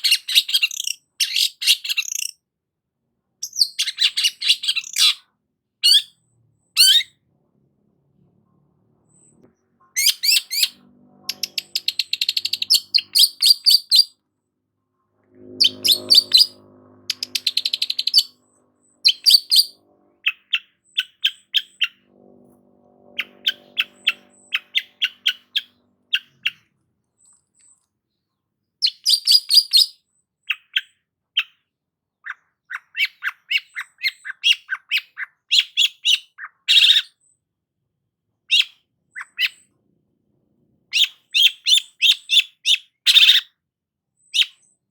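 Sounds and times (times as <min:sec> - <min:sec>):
shrike singing: 0:15.2 - 0:26.7.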